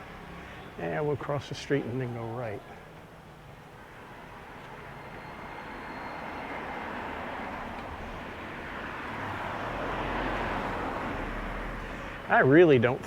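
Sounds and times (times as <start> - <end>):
vehicle passing: 4.1 - 13.0.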